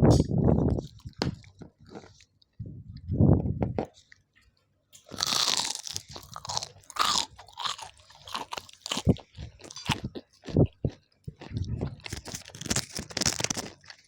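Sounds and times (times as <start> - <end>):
crunchy food chewing: 0.6 - 2.6, 5.0 - 14.0.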